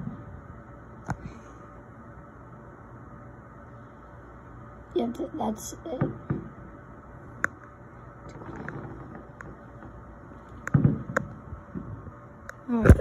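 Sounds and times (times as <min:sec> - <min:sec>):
low room hum: 0:00.0 - 0:13.0
distant fireworks popping and booming: 0:08.3 - 0:12.2.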